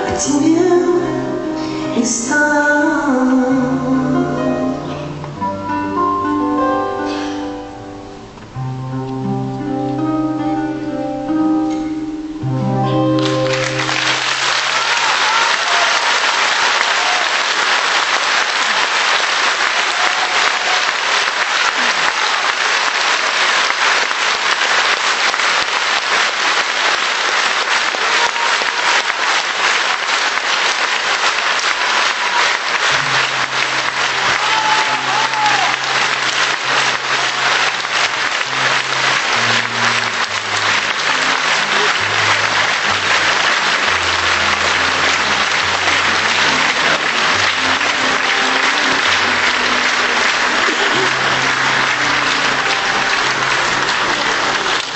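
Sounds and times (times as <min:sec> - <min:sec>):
guitar and bass chords: 0:03.2 - 0:14.4, 0:33.0 - 0:54.9
audience applauding: 0:12.8 - 0:54.9.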